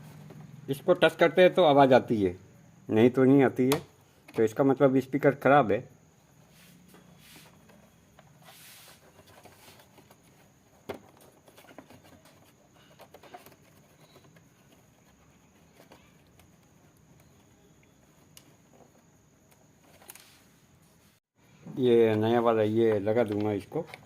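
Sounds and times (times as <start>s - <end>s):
faint clicks and knocks of handling: 9.1s - 20.2s, 22.0s - 24.0s.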